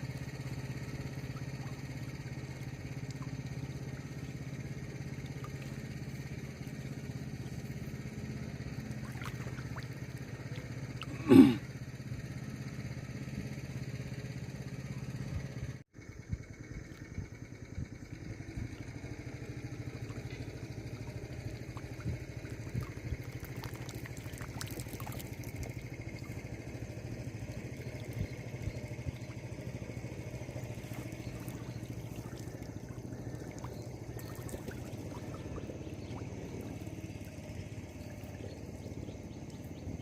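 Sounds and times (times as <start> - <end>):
small engine running: 0.0 - 40.0
water trickling and splashing: 1.2 - 11.1, 20.0 - 39.7.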